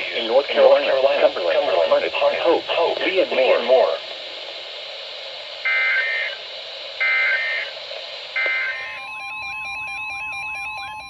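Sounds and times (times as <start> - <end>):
steady attention tone: 8.4 - 11.0
two-tone digital data chirping: 8.4 - 11.0.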